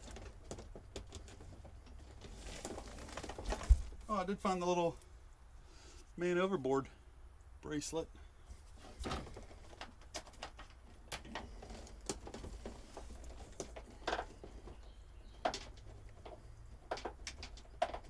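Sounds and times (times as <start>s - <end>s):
clicks taps and rustling of parts: 0.0s - 3.8s, 9.0s - 18.0s
low steady hum: 0.0s - 18.0s.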